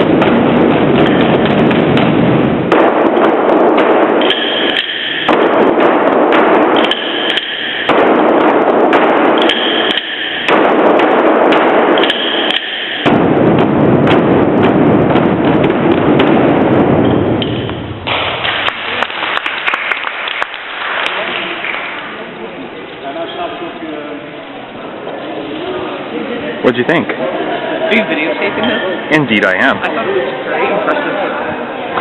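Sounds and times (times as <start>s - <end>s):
group of drums beating: 0.0s - 18.5s
applause: 18.1s - 22.2s.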